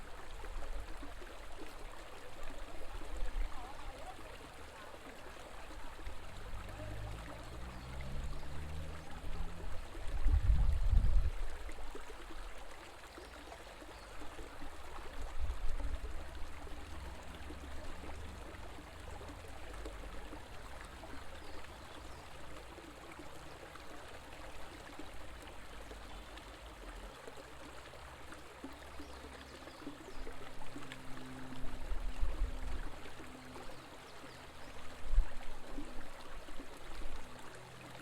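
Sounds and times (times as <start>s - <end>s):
river water flowing: 0.0s - 38.0s.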